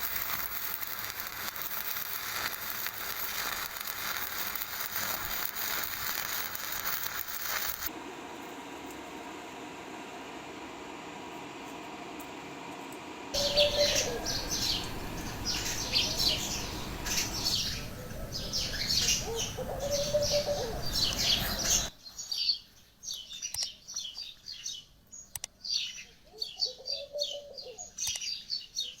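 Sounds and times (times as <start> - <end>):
loud steady noise: 13.4 - 21.9
lower sliding bird calls: 13.4 - 21.9
small birds chirping: 13.4 - 29.0.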